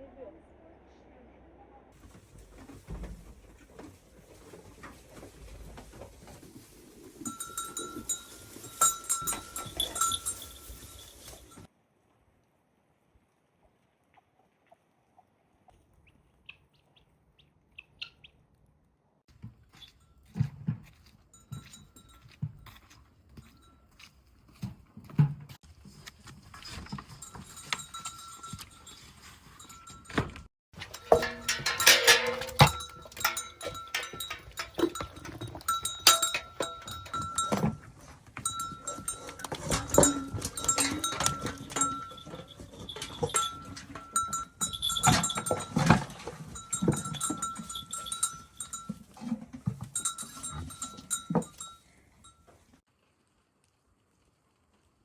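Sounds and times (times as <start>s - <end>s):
bell clinking: 7.2s - 11.7s, 27.2s - 52.4s.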